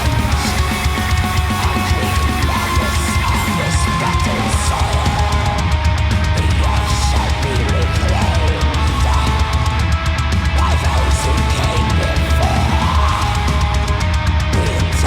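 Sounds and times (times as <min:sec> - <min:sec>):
heavy metal music: 0:00.0 - 0:15.0.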